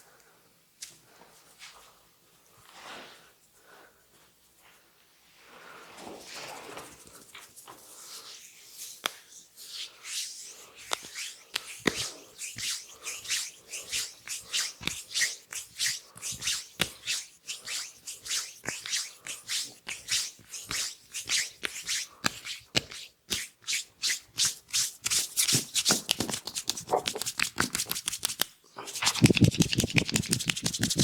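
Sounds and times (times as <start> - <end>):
hands rubbing oiled skin: 6.8 - 31.0.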